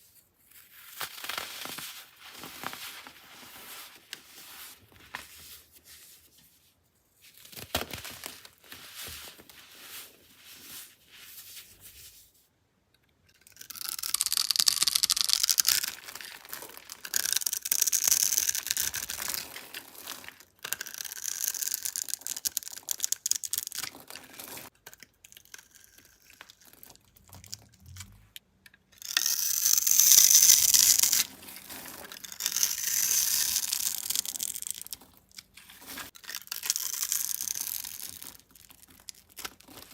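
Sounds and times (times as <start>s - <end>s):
soap crackling: 29.0s - 39.9s
soap scraping and crumbling: 29.0s - 39.9s.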